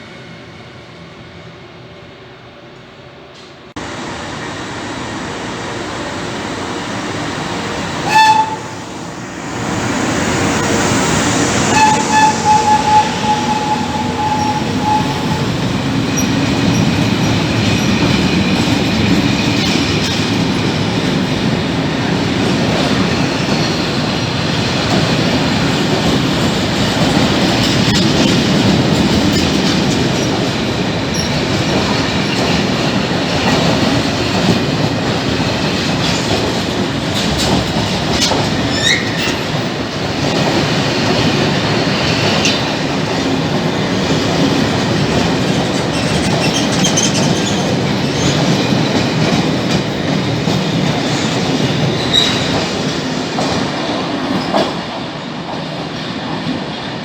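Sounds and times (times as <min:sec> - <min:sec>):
train rumble and wheel clatter: 0:00.0 - 0:57.0
train horn blasts: 0:08.0 - 0:09.0, 0:11.6 - 0:15.6.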